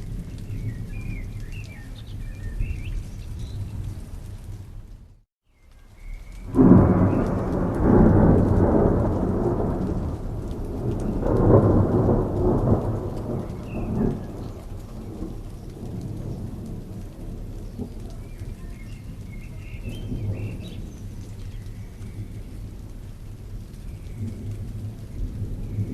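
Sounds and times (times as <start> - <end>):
steady rain: 0.0 - 25.9
thunder rumbling: 6.3 - 25.9.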